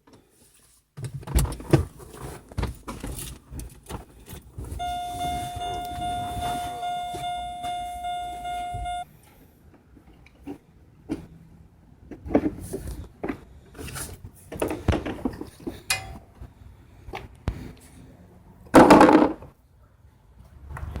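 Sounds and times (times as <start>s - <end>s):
electronic buzzer tone: 4.8s - 9.1s.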